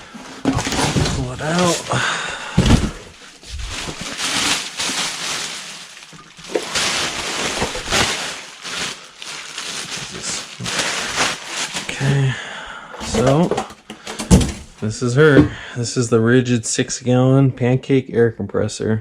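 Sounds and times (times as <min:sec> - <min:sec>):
packaging rustling and scraping: 0:00.0 - 0:12.3, 0:13.0 - 0:14.6.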